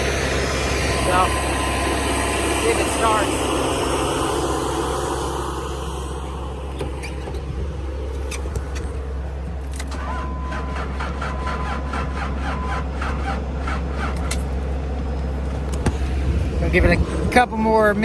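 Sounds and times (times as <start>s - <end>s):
steady tone: 0.0s - 9.6s
diesel tractor engine idling: 0.0s - 18.0s.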